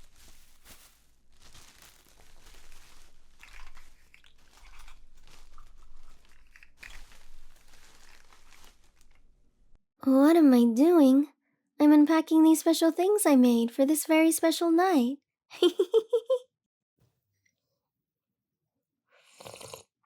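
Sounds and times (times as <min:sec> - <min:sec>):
packaging crinkling and rustling: 0:00.0 - 0:09.5.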